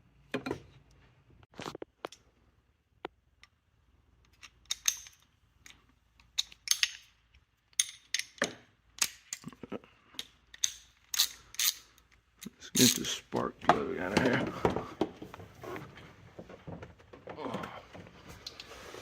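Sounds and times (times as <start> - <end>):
metal hand tools clinking: 10.2 - 13.2.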